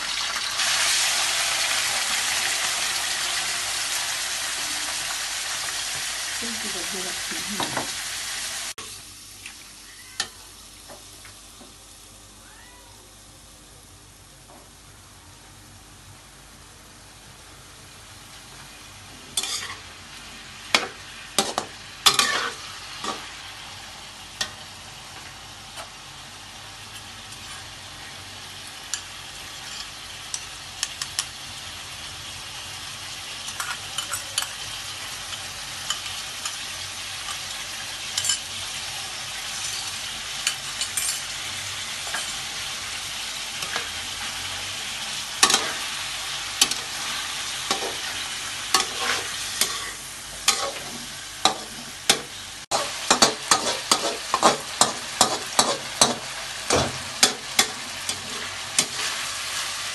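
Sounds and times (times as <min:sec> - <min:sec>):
food sizzling in hot oil: 0:00.0 - 0:13.2, 0:15.8 - 0:59.9
spatula scraping and knocking pan: 0:48.7 - 0:59.1.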